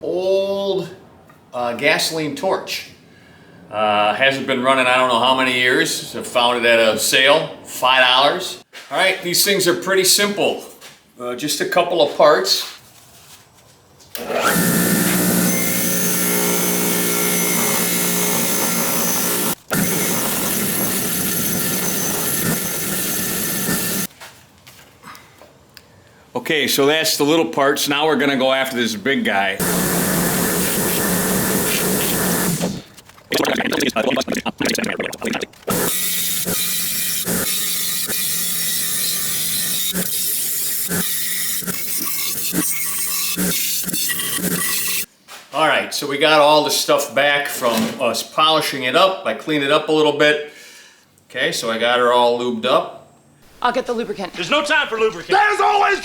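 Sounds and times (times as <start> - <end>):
power tool motor hum: 14.2 - 24.1, 29.6 - 33.7, 35.7 - 45.0
tool hissing on metal: 14.7 - 24.1, 35.7 - 45.1.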